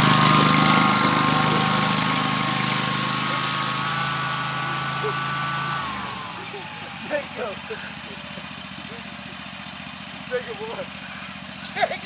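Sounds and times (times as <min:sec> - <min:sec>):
lawn mower engine whining: 0:00.0 - 0:12.0.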